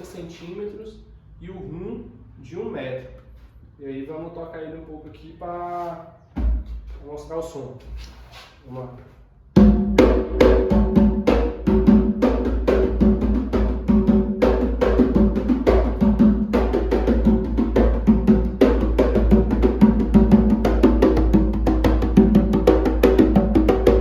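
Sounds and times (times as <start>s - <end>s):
hand drum fast rhythm: 9.6s - 24.0s.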